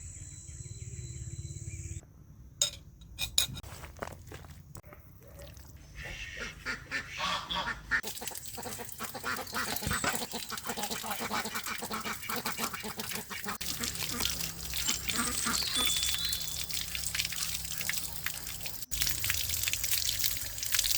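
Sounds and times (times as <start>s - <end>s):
ducks quacking: 5.9s - 16.0s.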